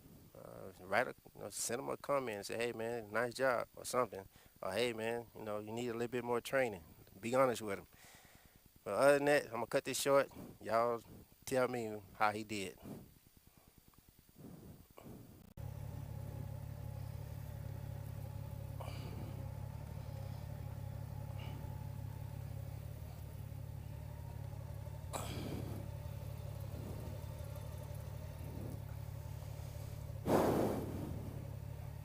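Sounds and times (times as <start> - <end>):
motorcycle engine idling: 15.4 - 32.0
short burst of noise: 28.5 - 31.7.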